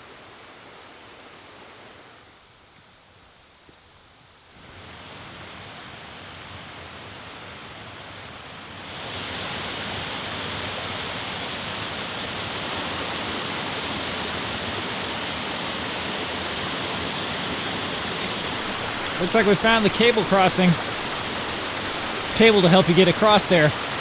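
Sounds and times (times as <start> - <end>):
rushing stream water: 8.8 - 24.0.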